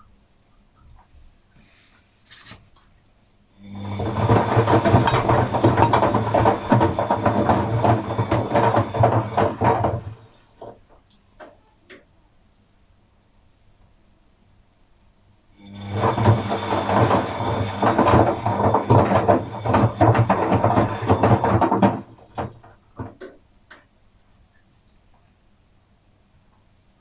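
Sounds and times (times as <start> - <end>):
washing machine hum: 0.0 - 12.2, 15.6 - 23.9
washing machine rattling: 3.7 - 11.1, 15.7 - 23.4.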